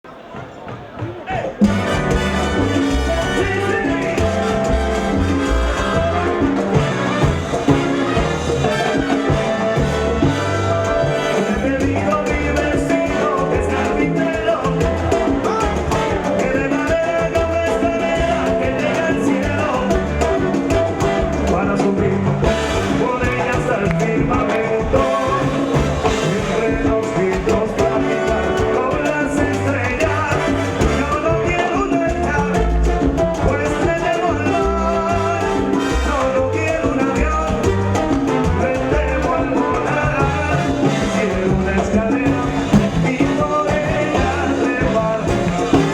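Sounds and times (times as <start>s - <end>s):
salsa band playing: 0.0s - 45.9s.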